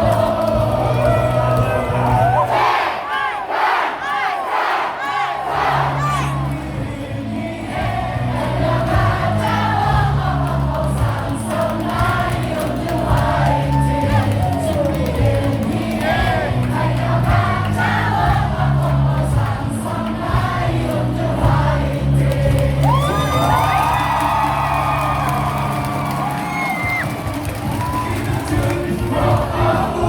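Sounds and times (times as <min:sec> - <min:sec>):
crowd shouting: 0:00.0 - 0:06.6
crowd singing a cheer song: 0:00.0 - 0:30.0.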